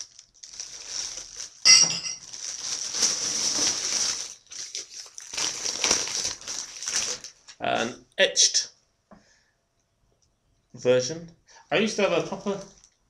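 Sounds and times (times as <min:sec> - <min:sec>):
wrapping crinkling and rustling: 0:00.0 - 0:07.6, 0:12.2 - 0:13.0.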